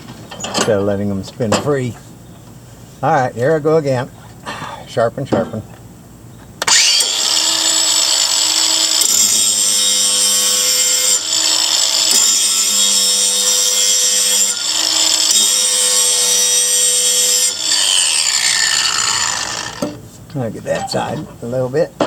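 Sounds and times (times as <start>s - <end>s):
angle grinder grinding steel: 6.6s - 20.0s.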